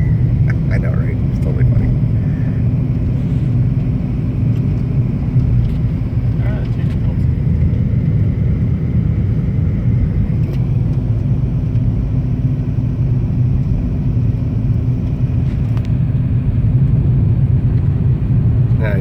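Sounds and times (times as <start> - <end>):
car cabin road rumble: 0.0 - 19.0.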